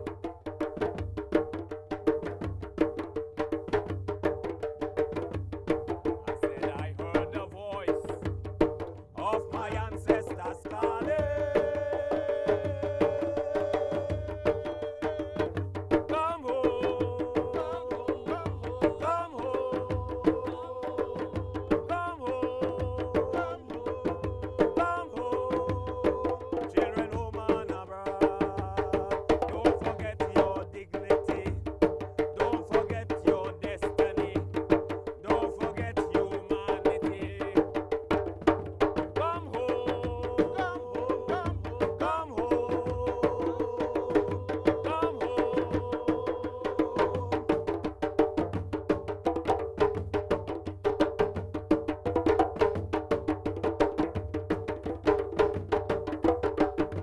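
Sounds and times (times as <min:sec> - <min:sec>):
hand drums playing: 0:00.0 - 0:57.0
voices singing held notes: 0:09.2 - 0:29.3, 0:39.2 - 0:47.7.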